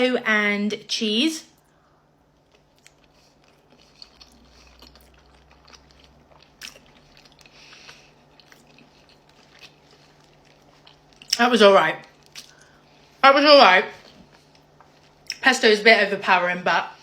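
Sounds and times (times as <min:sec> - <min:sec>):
mouth chewing wet smacks: 0:02.5 - 0:11.4.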